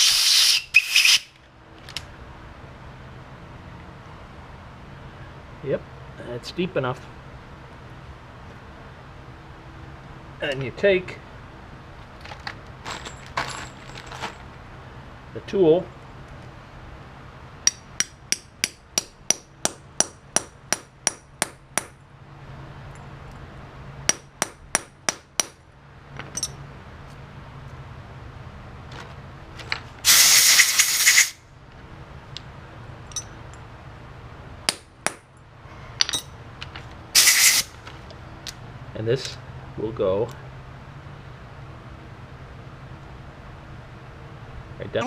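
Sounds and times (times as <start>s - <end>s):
loud hiss: 0.0s - 1.3s, 30.0s - 31.4s, 37.2s - 37.8s
hammer striking metal tool: 17.7s - 21.9s.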